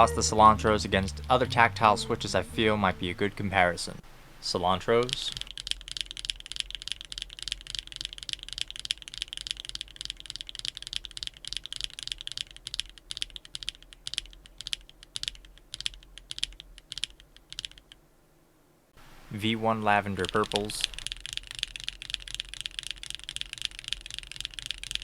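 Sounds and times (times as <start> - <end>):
mechanical keyboard typing: 5.2 - 18.0, 20.0 - 25.0.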